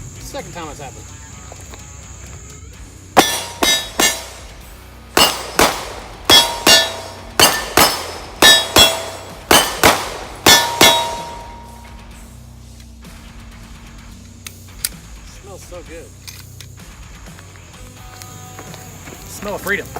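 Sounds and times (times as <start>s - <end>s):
pistol shots: 3.2s - 11.9s
metallic ring of steel targets: 3.2s - 12.4s.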